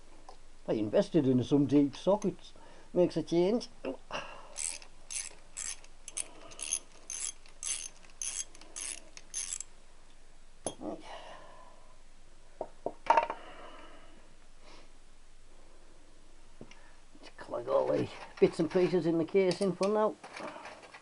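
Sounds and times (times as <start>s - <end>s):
ratchet wrench clicking: 4.6s - 9.7s.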